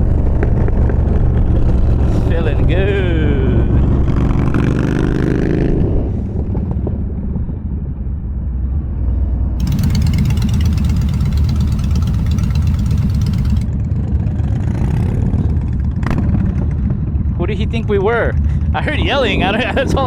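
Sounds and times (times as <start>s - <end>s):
motorcycle engine running: 9.6s - 13.7s.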